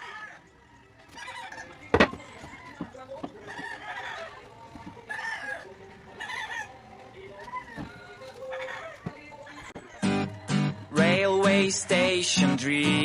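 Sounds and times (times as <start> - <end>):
chickens clucking: 0.0 - 13.0
sharp knocks: 1.9 - 3.4.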